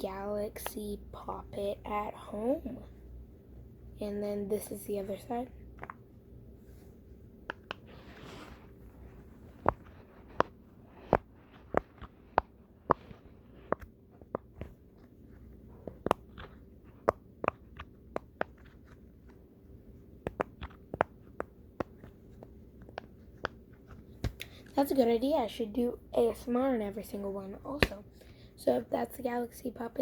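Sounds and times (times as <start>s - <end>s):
pop-it toy bubbles popping: 9.6s - 14.7s, 15.8s - 18.8s, 20.2s - 22.1s.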